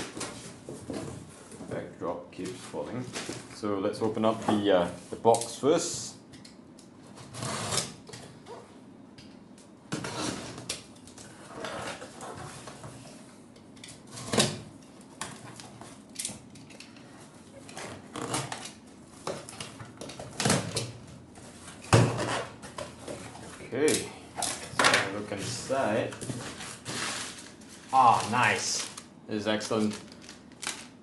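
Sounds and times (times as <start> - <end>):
cardboard box rustling and scraping: 25.4 - 28.4.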